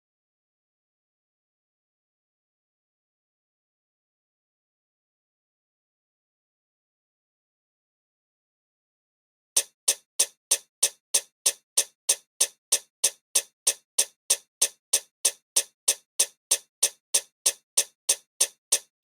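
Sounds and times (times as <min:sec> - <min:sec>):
sharp ticking: 0:09.6 - 0:18.9.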